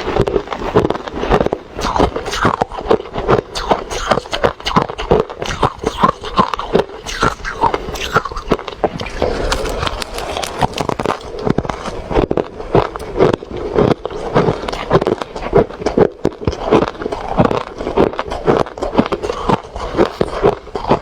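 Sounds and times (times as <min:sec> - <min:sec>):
chewing crunchy ice: 0:00.0 - 0:21.0.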